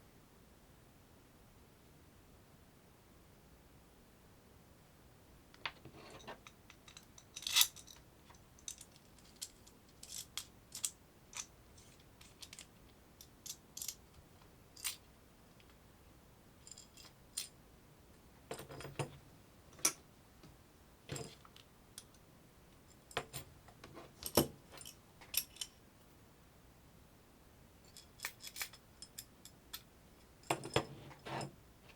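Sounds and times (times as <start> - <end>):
small metal parts clinking: 6.0 - 14.2, 14.8 - 15.1, 16.6 - 17.5, 24.2 - 25.8, 27.9 - 31.5.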